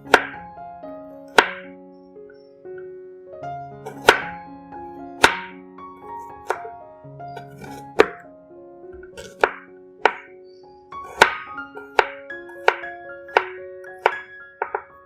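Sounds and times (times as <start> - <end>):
knife chopping on cutting board: 0.0 - 0.4, 1.3 - 1.7, 3.8 - 4.4, 5.2 - 5.5, 6.2 - 6.8, 7.4 - 8.2, 9.0 - 10.3, 11.0 - 15.0
background piano music: 0.0 - 15.0.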